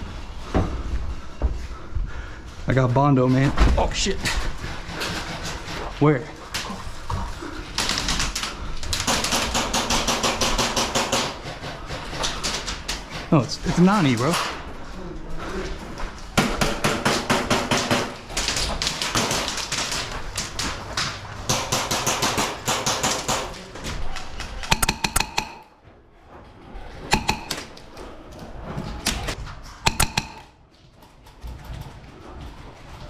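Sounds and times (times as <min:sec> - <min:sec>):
airsoft guns firing: 0:09.0 - 0:11.4, 0:16.4 - 0:20.8, 0:21.4 - 0:23.6, 0:24.7 - 0:25.7, 0:27.1 - 0:27.7, 0:29.9 - 0:30.5.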